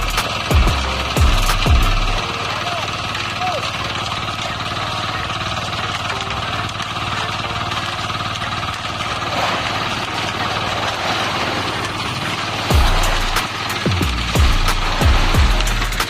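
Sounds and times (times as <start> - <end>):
concrete mixer engine chugging: 0.0 - 16.0.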